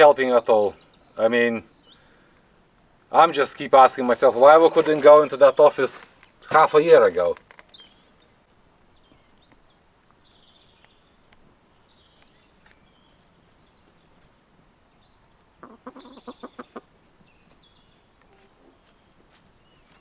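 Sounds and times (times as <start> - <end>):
chicken clucking: 15.6 - 16.9.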